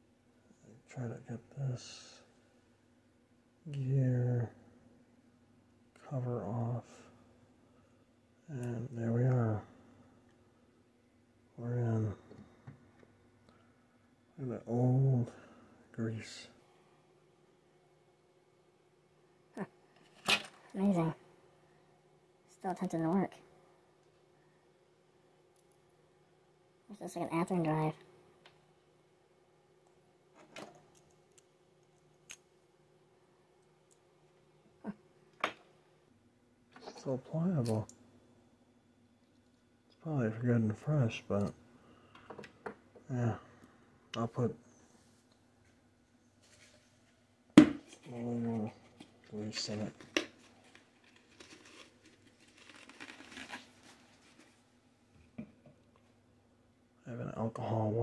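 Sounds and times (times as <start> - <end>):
faint steady hum: 0.0 - 58.0
faint crinkling and scratching: 36.7 - 37.9, 44.7 - 56.2.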